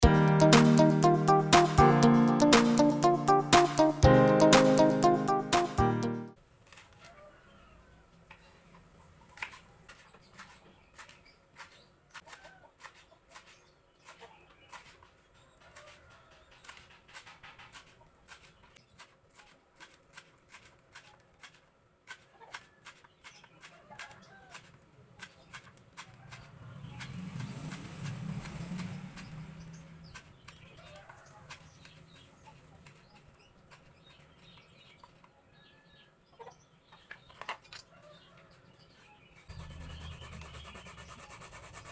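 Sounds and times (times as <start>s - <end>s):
chickens clucking: 36.2s - 41.4s.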